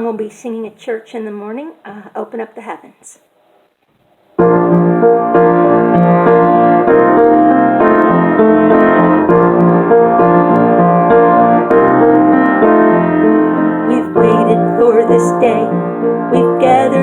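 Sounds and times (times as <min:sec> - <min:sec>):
piano chords: 0:04.4 - 0:17.0.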